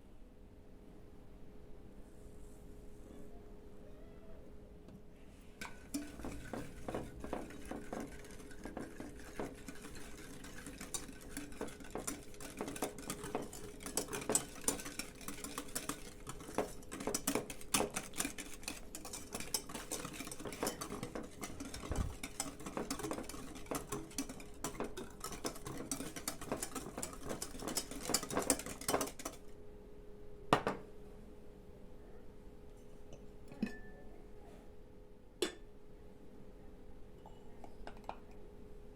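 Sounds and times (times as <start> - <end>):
faint steady hum: 0.0 - 38.9
utensil beating batter in bowl: 5.6 - 29.6.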